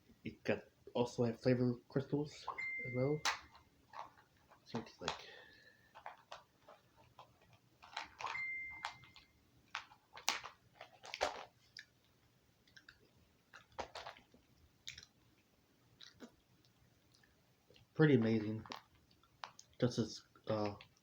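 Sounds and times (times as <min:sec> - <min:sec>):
mint crunching in teeth: 0:12.6 - 0:15.1, 0:16.0 - 0:16.4.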